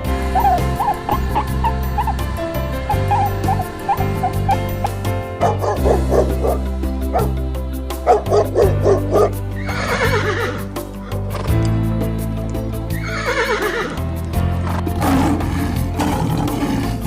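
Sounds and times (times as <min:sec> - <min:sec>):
background music: 0:00.0 - 0:17.0
horse whinnying: 0:00.1 - 0:05.0, 0:08.1 - 0:11.6, 0:12.9 - 0:14.1
dog barking: 0:05.4 - 0:07.4, 0:08.1 - 0:09.4.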